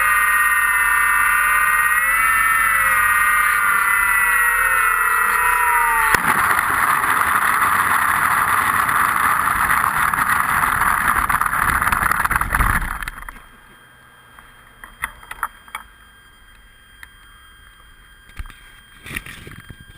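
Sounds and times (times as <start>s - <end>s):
loud steady rushing noise: 0.0s - 13.3s
model plane motor whine: 0.0s - 19.9s.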